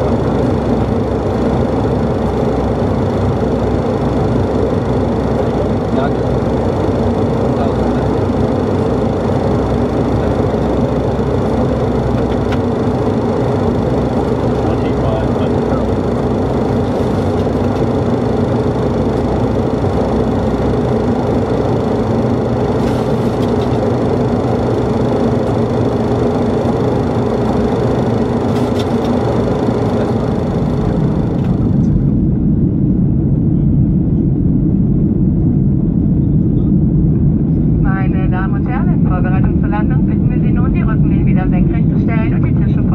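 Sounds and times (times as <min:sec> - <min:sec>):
steady tones: 0:00.0 - 0:32.3
airplane cabin engine drone: 0:00.0 - 0:42.9.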